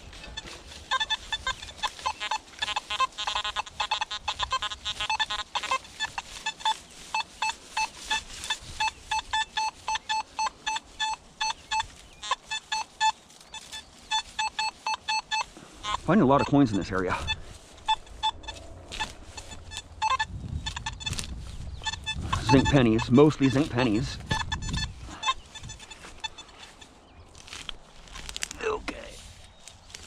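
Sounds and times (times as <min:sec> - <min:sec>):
metal detector beeps: 0:00.0 - 0:27.8.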